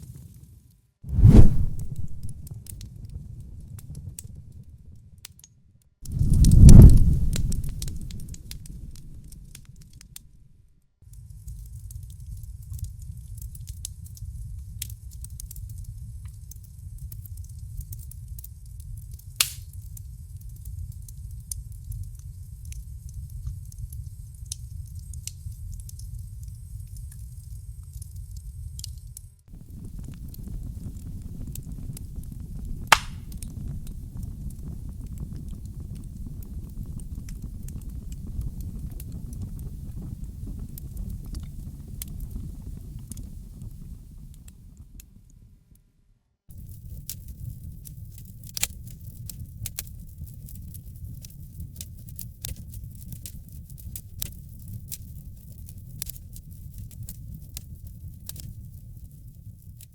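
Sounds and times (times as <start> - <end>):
loud sharp pop from fire: 1.1 - 2.8, 6.0 - 9.1, 19.4 - 19.8, 29.6 - 36.2
fire rumbling and crackling: 1.1 - 10.4, 11.1 - 45.5, 46.5 - 59.9.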